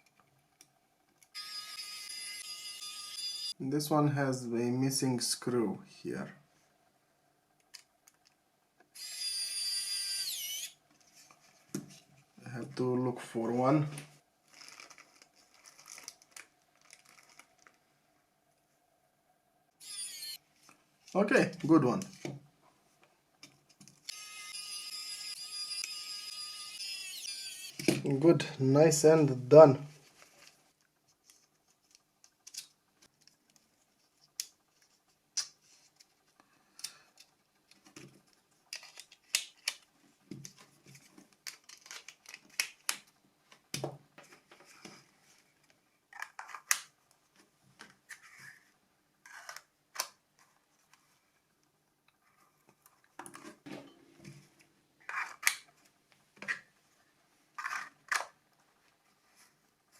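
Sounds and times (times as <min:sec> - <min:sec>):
plastic phone parts clicking: 0:41.4 - 0:43.1.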